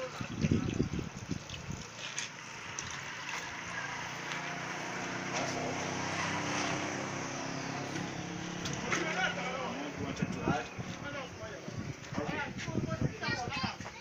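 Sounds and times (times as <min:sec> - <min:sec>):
engine running: 0:02.2 - 0:10.6.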